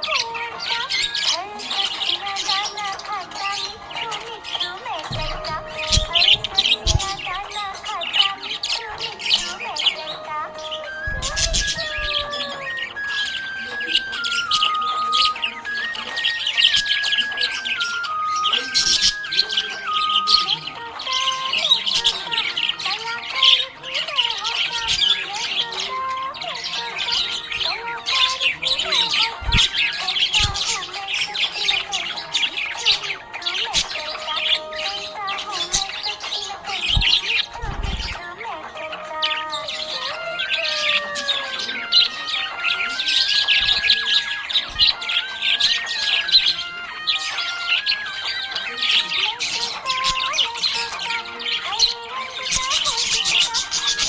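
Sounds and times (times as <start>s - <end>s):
budgerigars chirping: 0.0s - 54.0s
low thumps: 5.0s - 7.5s.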